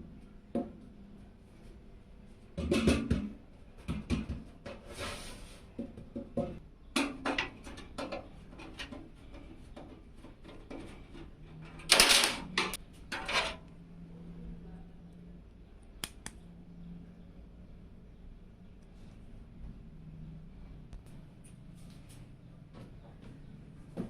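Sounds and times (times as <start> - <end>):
loud scraping rustles: 4.7 - 5.7
sharp click: 16.0 - 16.4.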